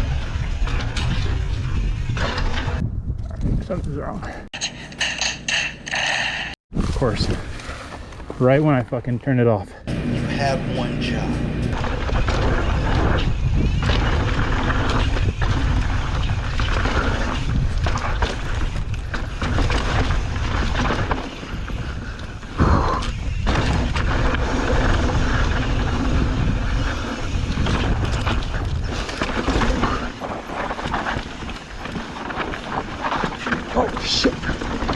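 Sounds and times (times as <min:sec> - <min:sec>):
wind buffeting microphone: 0:00.0 - 0:04.4, 0:11.6 - 0:34.9
bike rattling over dirt trail: 0:09.9 - 0:22.6, 0:23.2 - 0:34.9.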